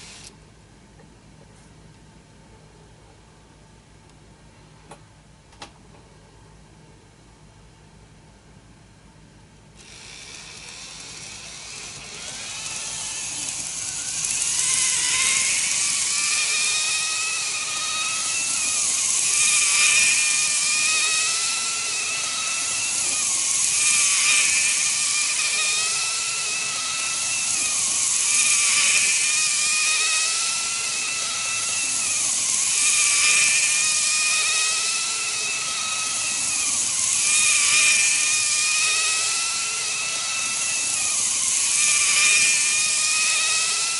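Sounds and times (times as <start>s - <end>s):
model train motor whine: 0.0s - 0.3s, 9.8s - 43.9s.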